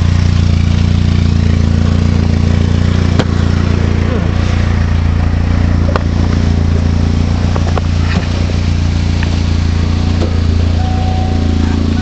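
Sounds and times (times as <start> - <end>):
car engine running: 0.0 - 12.0
light drivetrain clicks: 5.8 - 10.8.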